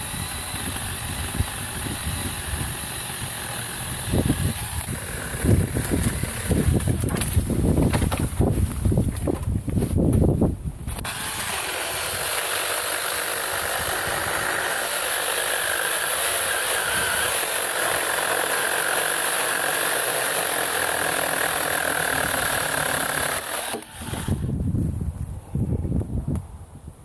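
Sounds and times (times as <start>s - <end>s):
electric chainsaw whine: 0.0s - 7.4s, 10.9s - 24.5s.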